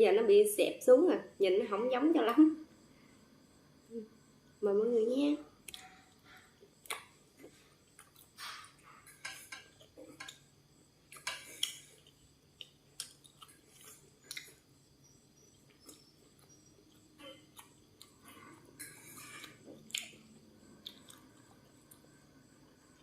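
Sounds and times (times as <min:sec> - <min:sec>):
crunchy bites and chewing: 0:11.1 - 0:14.8.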